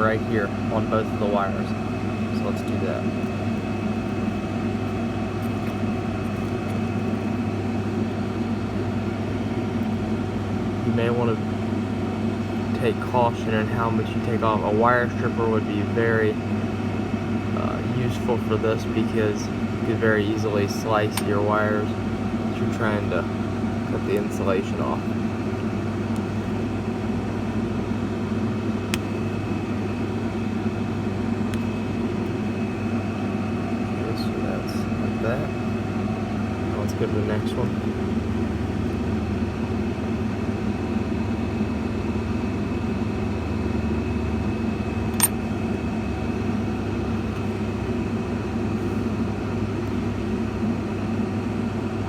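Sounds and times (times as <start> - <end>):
mechanical hum: 0.0 - 52.0
sharp click: 45.1 - 45.4.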